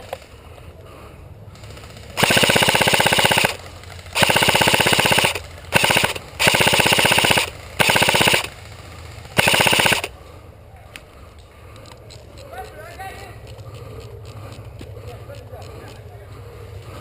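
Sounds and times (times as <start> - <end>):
airsoft gun firing bursts: 1.6 - 10.2.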